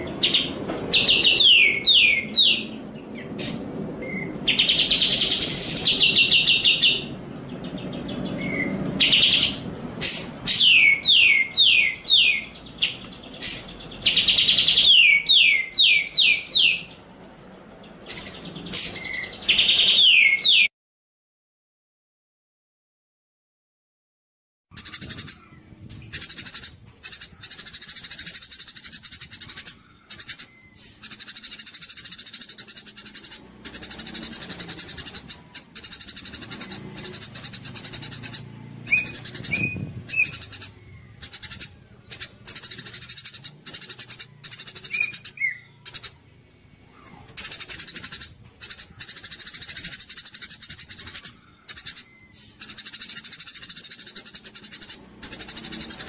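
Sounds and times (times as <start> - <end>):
songbird chattering song: 0.0 - 20.7, 24.7 - 56.0
low bird chirps: 24.7 - 56.0.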